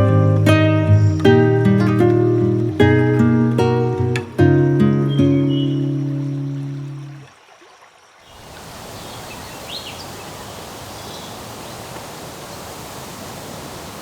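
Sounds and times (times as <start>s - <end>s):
faint bird chirps: 5.0s - 7.3s, 8.2s - 11.9s
steady background hiss: 8.2s - 14.0s.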